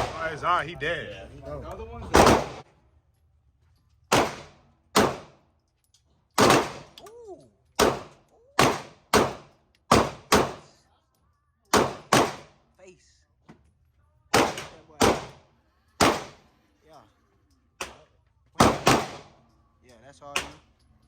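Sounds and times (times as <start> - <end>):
gunshots with echo: 0.0 - 0.3, 2.1 - 2.6, 4.1 - 5.4, 6.4 - 7.0, 7.8 - 10.6, 11.8 - 12.5, 14.3 - 15.4, 16.0 - 16.4, 18.6 - 19.4.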